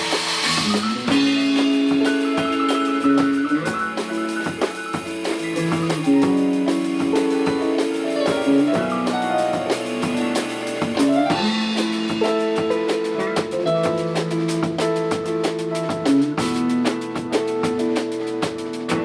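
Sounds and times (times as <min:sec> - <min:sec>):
drum kit beat: 0:00.0 - 0:19.0.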